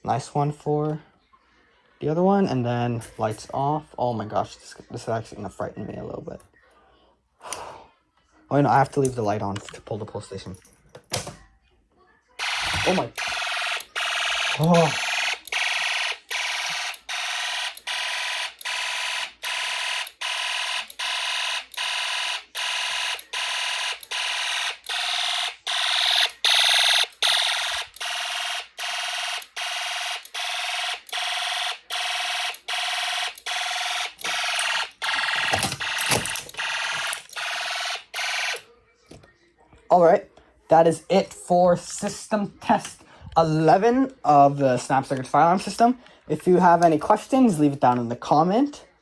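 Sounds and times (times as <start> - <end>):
fire alarm sounder pulsing: 12.4 - 38.6.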